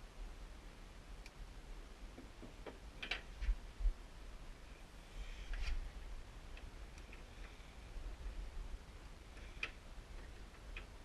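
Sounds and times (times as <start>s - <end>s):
light clicks and knocks of lathe parts: 9.3s - 11.0s.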